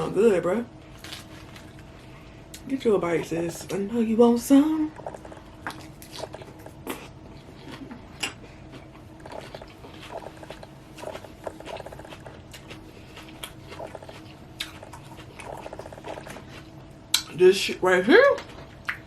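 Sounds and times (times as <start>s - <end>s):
chewing salad crunching: 0.9s - 3.7s, 5.0s - 17.4s.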